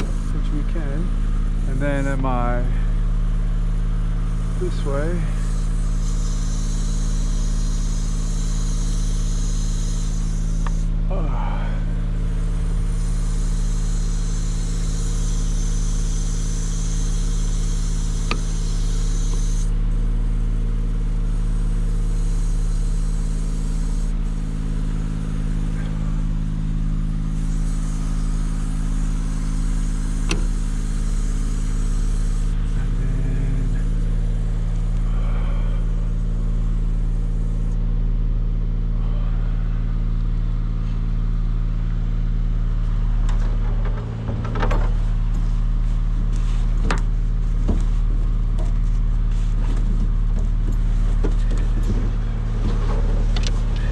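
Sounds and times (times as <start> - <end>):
truck engine idling: 0.0 - 53.9
hiss: 3.8 - 37.7.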